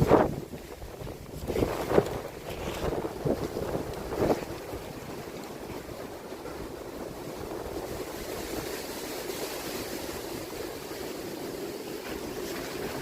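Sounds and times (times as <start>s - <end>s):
strong wind buffeting microphone: 0.0s - 13.0s.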